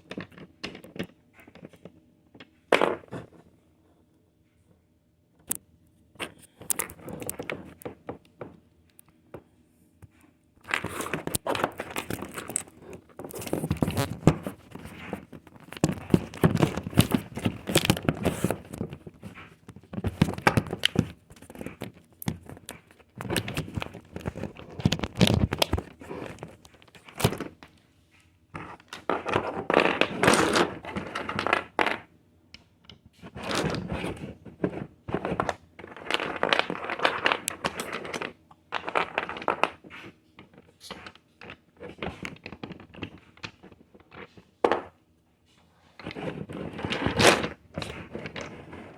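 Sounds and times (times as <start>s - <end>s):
plastic toy bricks clattering: 0.0s - 3.3s, 10.6s - 27.6s, 28.6s - 32.1s, 33.2s - 45.0s, 46.0s - 48.9s.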